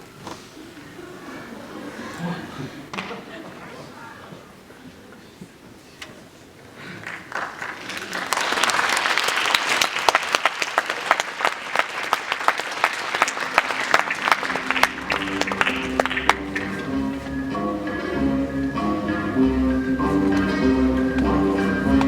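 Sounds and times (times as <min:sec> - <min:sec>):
audience applauding: 0:07.0 - 0:22.0
music: 0:13.6 - 0:22.0.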